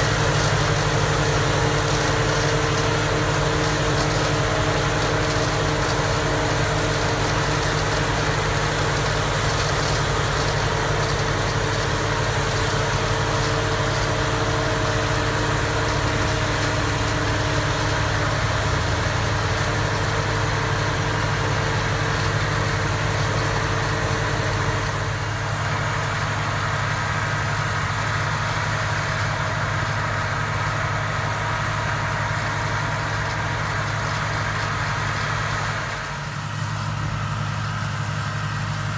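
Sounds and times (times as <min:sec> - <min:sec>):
harvester engine hum: 0:00.0 - 0:38.9.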